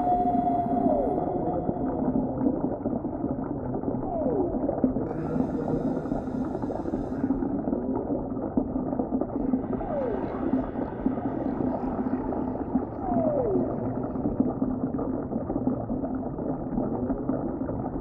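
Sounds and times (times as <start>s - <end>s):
whale moans: 0.0s - 2.5s, 9.5s - 14.3s
underwater rumbling wash: 0.0s - 18.0s.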